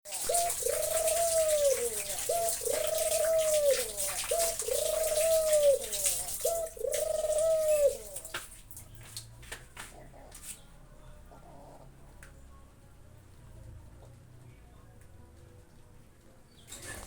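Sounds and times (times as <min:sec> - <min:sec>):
dove cooing: 0:00.1 - 0:08.4, 0:11.3 - 0:12.0
rain hissing: 0:00.1 - 0:08.6.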